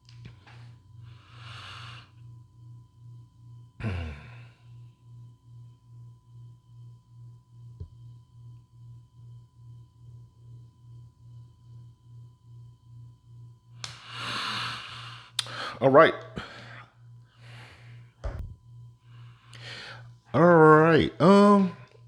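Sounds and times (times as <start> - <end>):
person breathing: 1.0 - 2.1, 3.8 - 4.7, 13.9 - 15.8, 16.4 - 18.4, 19.1 - 20.1
person sighing: 3.8 - 4.5
low pulsing hum: 16.4 - 21.9.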